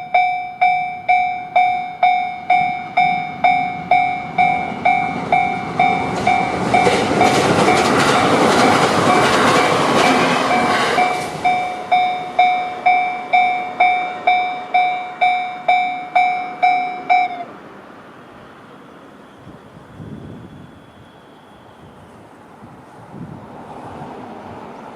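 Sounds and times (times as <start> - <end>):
level crossing warning bell: 0.0 - 17.6
electric train rushing past: 0.0 - 24.9.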